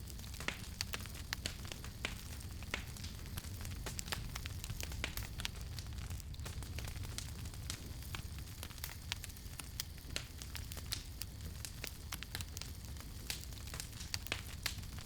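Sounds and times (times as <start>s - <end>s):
campfire crackling and popping: 0.0s - 15.0s
low rumble of flames: 0.0s - 15.0s.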